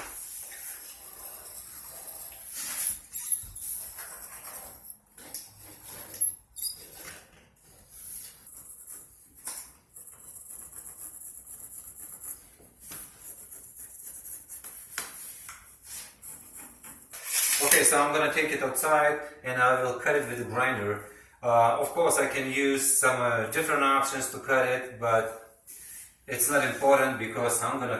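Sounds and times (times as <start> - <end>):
pencil scratching on tile: 0.0 - 17.8.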